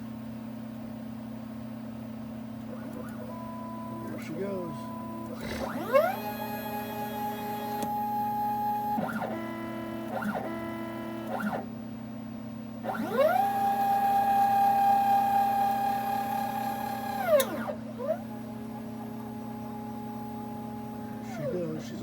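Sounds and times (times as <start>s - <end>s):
stepper motors whining: 2.7s - 11.7s, 12.8s - 22.0s.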